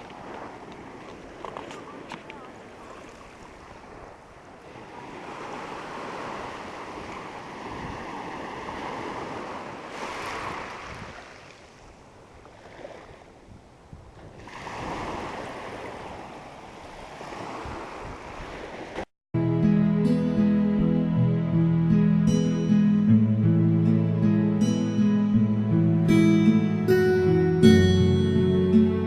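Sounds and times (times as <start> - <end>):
ocean surf washing onto beach: 0.0 - 11.9, 14.4 - 19.1
wind on the microphone: 0.0 - 19.0.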